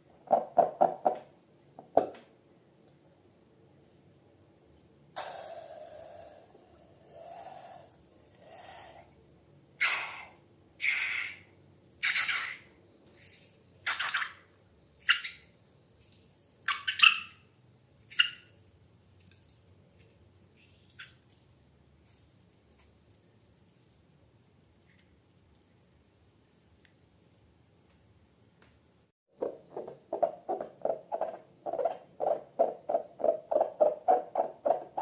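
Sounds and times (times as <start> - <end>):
slime squelching by hand: 18.0 - 28.0.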